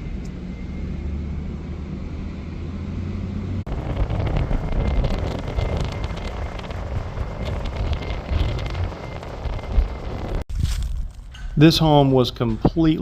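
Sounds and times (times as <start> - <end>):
low vehicle drone: 0.0 - 10.4
wind rumble on microphone: 3.4 - 11.6
crackles: 3.7 - 11.4.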